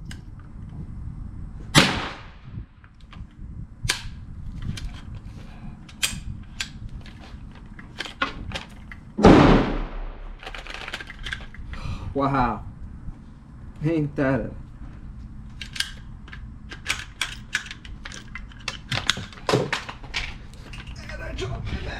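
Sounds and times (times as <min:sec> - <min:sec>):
loud gunshots: 0:01.8 - 0:02.4, 0:09.2 - 0:10.4.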